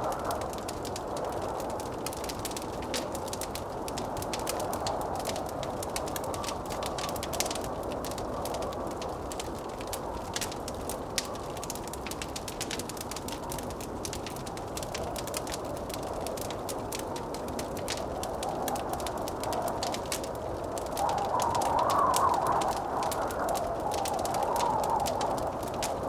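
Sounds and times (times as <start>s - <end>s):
wood fire crackling: 0.0s - 26.0s
blizzard wind rushing: 14.6s - 26.0s.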